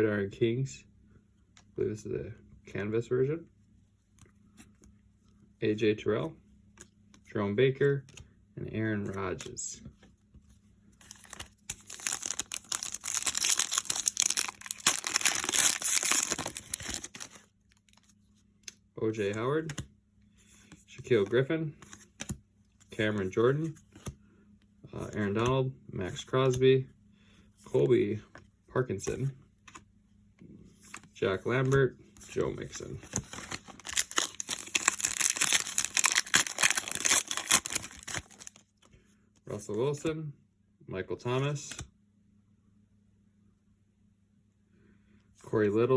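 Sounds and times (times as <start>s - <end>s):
wrapper crinkling and tearing: 11.0s - 18.1s, 33.0s - 38.6s.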